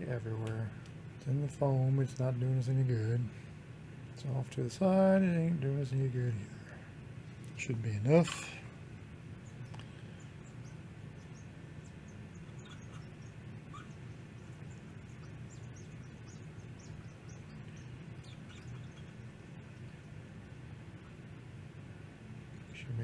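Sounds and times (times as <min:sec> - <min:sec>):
faint low hum: 0:00.0 - 0:23.0
faint high-pitched chirps: 0:09.4 - 0:20.1.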